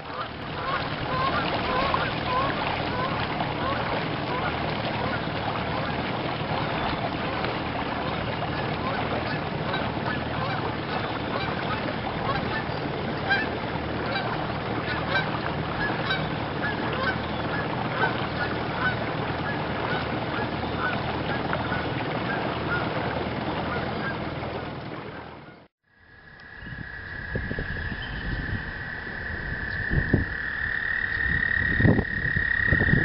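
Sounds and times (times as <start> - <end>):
geese honking: 0.1 - 5.9, 8.0 - 23.0.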